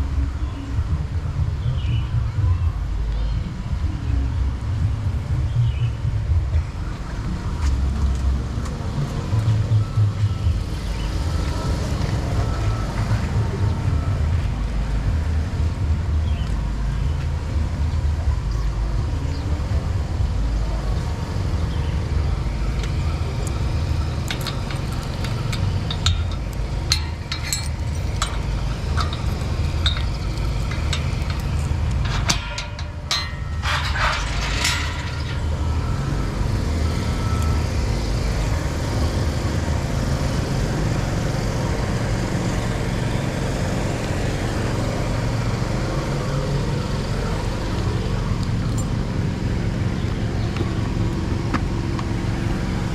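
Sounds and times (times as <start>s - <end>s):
motorcycle engine and road rumble: 0.0s - 52.9s
light clicks and rattles: 22.8s - 35.7s.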